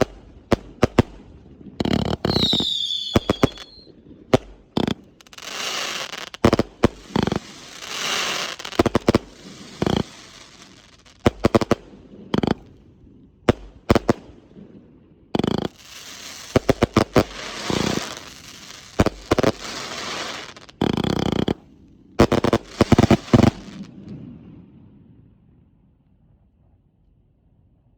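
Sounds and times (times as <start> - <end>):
firework bangs: 0.0 - 12.7, 13.5 - 14.3, 15.4 - 21.6, 22.2 - 24.1
firework crackling hiss: 1.8 - 11.8, 12.4 - 12.6, 15.4 - 21.6, 22.2 - 24.0.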